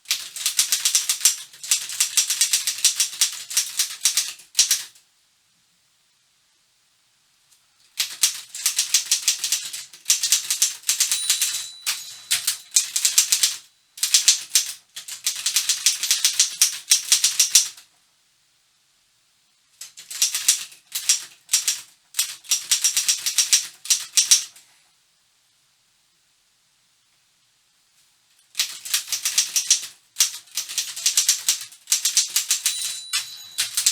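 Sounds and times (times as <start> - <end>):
typewriter typing: 0.0 - 5.0, 8.0 - 17.8, 19.8 - 24.6, 28.6 - 33.9.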